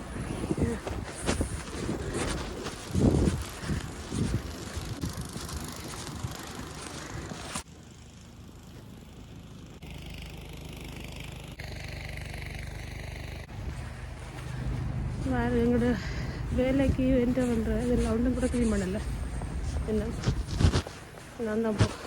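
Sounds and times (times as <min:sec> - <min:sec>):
wind and road noise: 0:00.0 - 0:22.0
vehicle engine idling: 0:06.4 - 0:20.1.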